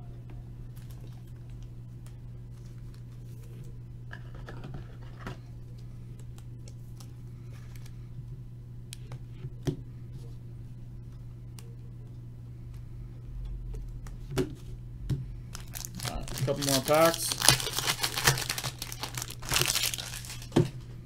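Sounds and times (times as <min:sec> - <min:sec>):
steady low hum: 0:00.0 - 0:21.0
trading cards rustling: 0:15.5 - 0:20.6.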